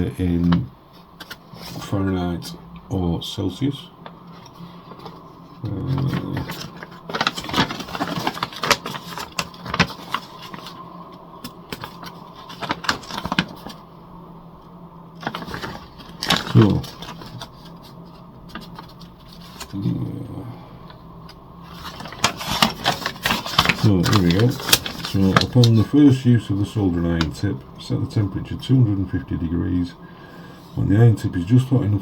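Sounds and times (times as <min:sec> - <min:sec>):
small objects and paper handled: 0:04.3 - 0:13.8, 0:15.2 - 0:19.9, 0:21.6 - 0:25.9
man murmuring: 0:05.6 - 0:06.7, 0:19.7 - 0:20.7.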